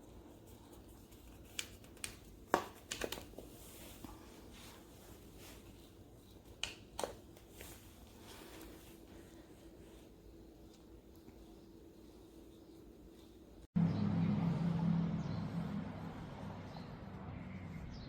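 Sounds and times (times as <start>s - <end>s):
faint background hum: 0.0s - 18.0s.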